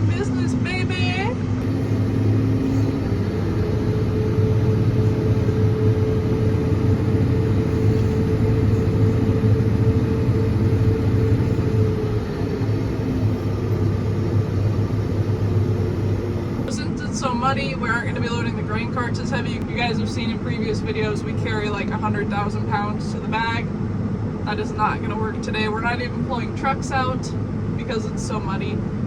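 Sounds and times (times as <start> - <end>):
diesel engine drone: 0.0 - 29.0
steady whine: 0.0 - 29.0.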